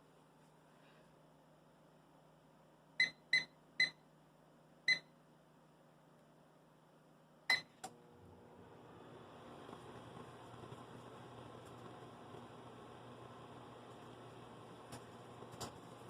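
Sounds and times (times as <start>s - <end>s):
microwave button beeps: 3.0s - 4.0s, 4.9s - 5.1s, 7.5s - 7.8s
microwave oven humming: 6.4s - 16.0s.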